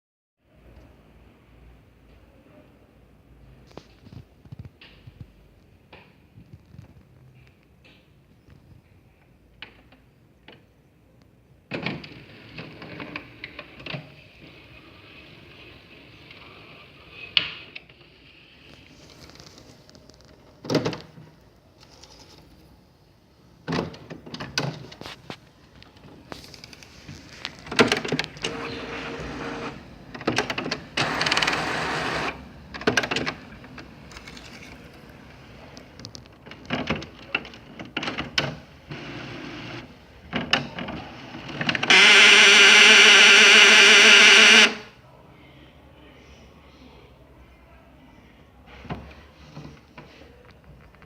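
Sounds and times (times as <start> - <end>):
printer motor whirring: 27.8 - 33.4, 38.8 - 39.9, 41.2 - 44.9
loud steady buzz: 41.8 - 45.0.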